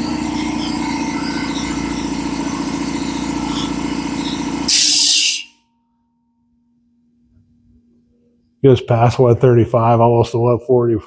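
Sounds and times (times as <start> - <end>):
air compressor running: 0.0 - 5.5
valve hissing: 0.0 - 5.5.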